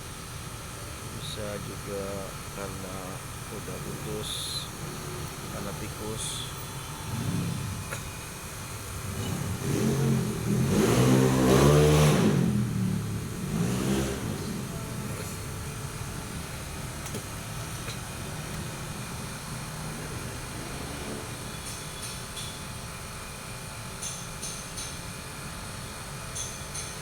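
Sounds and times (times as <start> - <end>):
vehicle engine passing: 3.5 - 22.0.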